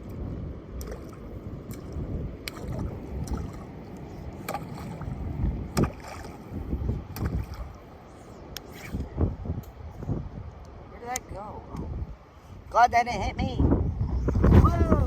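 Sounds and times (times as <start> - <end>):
wind buffeting microphone: 0.0 - 15.0.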